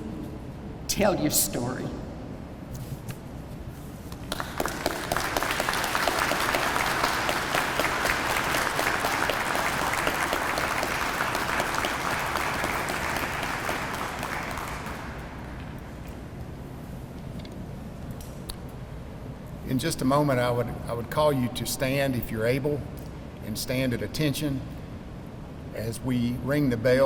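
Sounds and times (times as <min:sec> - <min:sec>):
audience applauding: 0:04.2 - 0:15.8.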